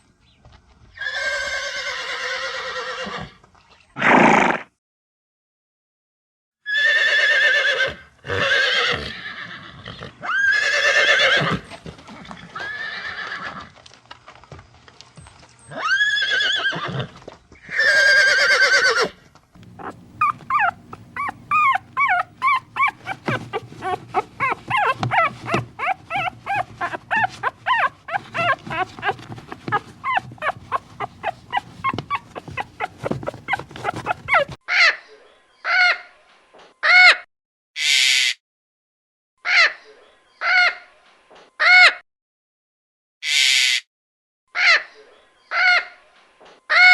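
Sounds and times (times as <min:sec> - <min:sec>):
horse neighing and whinnying: 0:01.0 - 0:03.4, 0:04.0 - 0:04.7, 0:06.7 - 0:13.7, 0:15.7 - 0:34.6.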